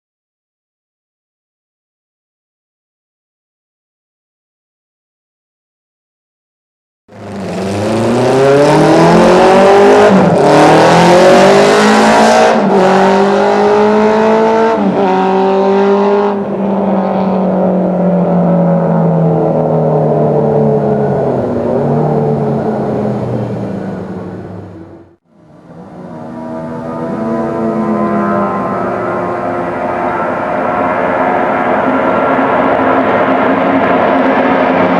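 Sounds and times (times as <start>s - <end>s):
motorcycle engine revving through gears: 7.1s - 34.9s.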